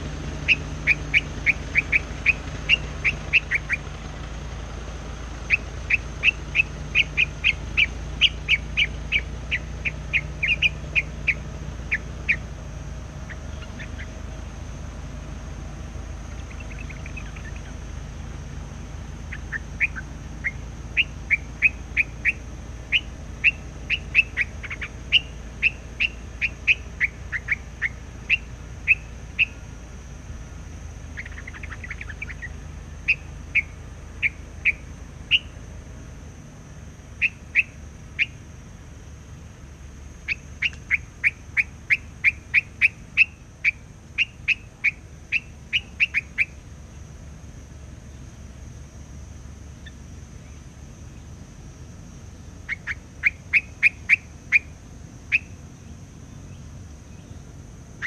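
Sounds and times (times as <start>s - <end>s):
bird whistling sharp notes: 0.4s - 3.8s, 5.5s - 12.4s, 40.3s - 46.6s.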